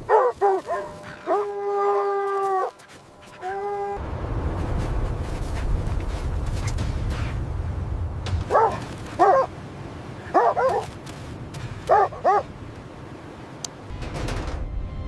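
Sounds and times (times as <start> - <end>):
low rumble: 3.9 - 9.1.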